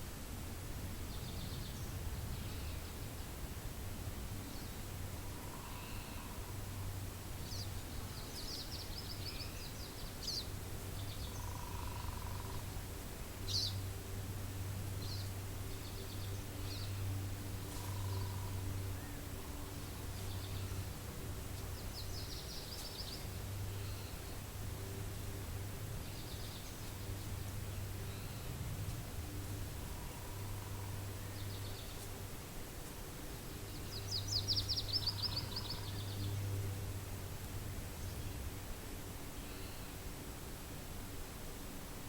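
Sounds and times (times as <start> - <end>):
wind with low rumble: 0.0 - 42.0
birds calling and chirping: 13.5 - 13.8, 15.0 - 24.5, 33.4 - 36.6.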